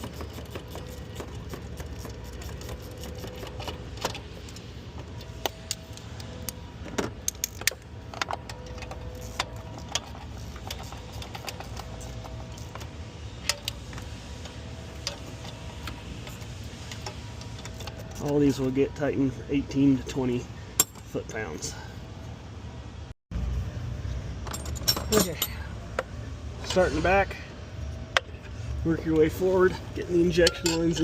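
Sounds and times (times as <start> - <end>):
steady low background hum: 0.0 - 31.0
hand tools clinking on metal: 24.4 - 25.8, 29.2 - 31.0.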